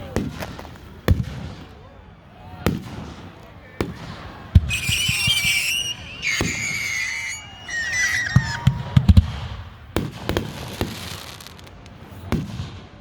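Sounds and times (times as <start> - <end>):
fireworks whistling: 3.8 - 9.7
fireworks bangs: 3.8 - 11.5
fireworks crackling pops: 3.8 - 12.8.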